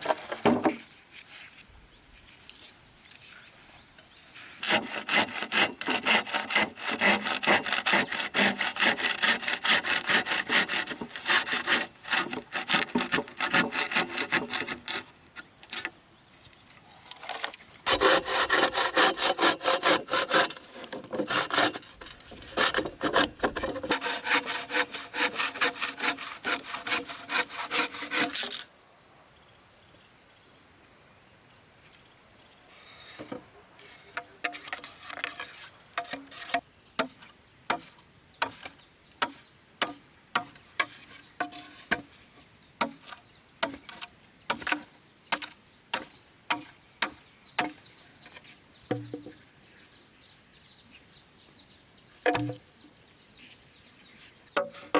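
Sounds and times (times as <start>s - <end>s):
wood being hand-sawn: 4.6s - 15.9s, 17.9s - 28.6s
sharp wooden knocks: 52.3s - 52.6s.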